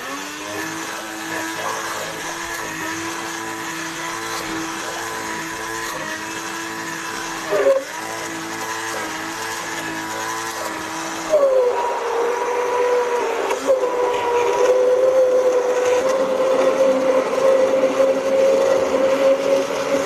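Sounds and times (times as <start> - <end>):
electric blender running: 0.0 - 20.0.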